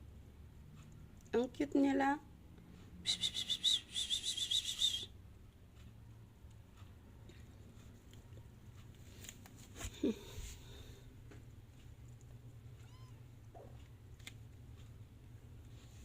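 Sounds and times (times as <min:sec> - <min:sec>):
low steady hum: 0:00.0 - 0:16.0
kitten squeak: 0:12.8 - 0:13.8.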